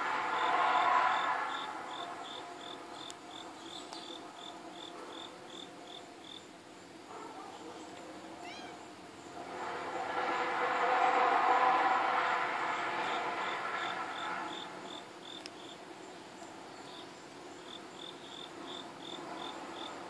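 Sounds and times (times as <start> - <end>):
insect chirping: 0.2 - 7.0, 13.0 - 20.0
low droning hum: 9.2 - 15.2.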